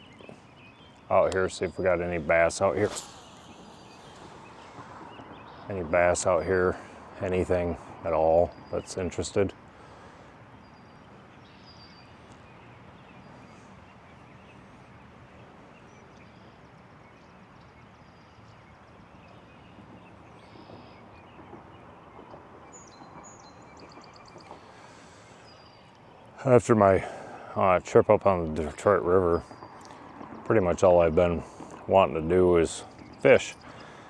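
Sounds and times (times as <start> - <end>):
high bird chirps: 0.0 - 6.2
faint outdoor background hiss: 0.0 - 34.0.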